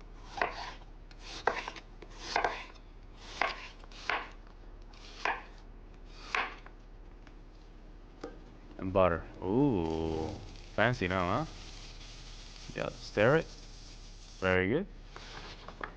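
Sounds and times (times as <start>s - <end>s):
knife chopping on cutting board: 0.3s - 4.4s, 5.1s - 5.6s, 6.2s - 6.6s.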